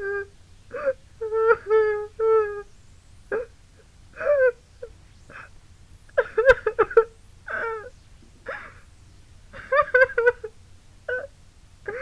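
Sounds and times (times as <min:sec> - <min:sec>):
woman crying: 0:00.0 - 0:02.7, 0:04.2 - 0:04.6, 0:06.2 - 0:07.9.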